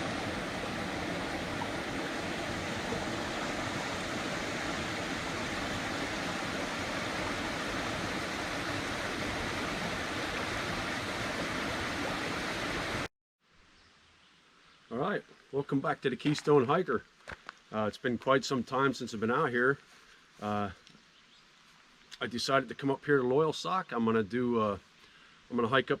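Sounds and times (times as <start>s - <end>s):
flowing water rushing: 0.0s - 13.1s.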